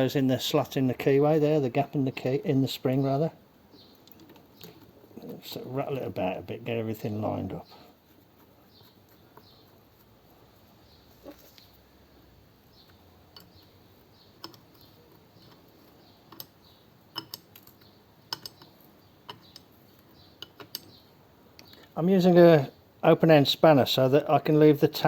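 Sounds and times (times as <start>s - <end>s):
small metal parts clicking: 14.4s - 21.0s.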